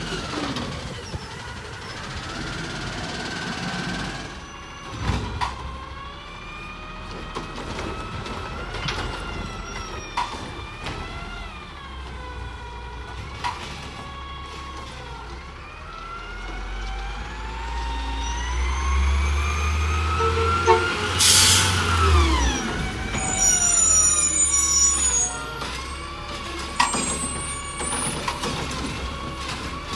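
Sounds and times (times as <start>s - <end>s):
garbage truck engine revving: 0.0s - 29.9s
hydraulic pump whining: 16.2s - 29.9s
loud hiss of air: 20.2s - 26.2s.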